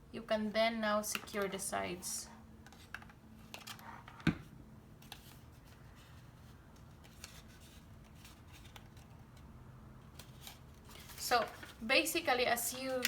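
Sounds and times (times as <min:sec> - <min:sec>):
paper rustling: 0:10.1 - 0:11.9.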